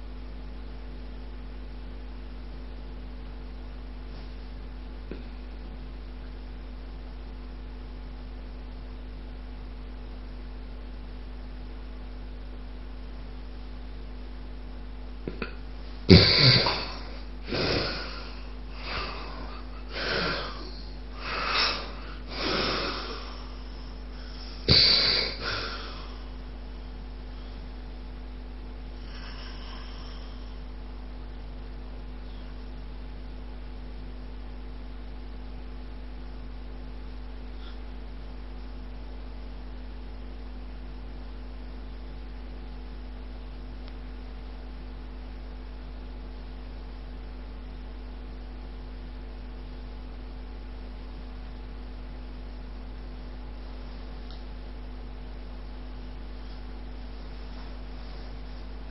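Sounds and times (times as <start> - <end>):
electrical mains hum: 0.0 - 58.9
person snoring and snorting: 15.3 - 26.4, 29.0 - 30.6.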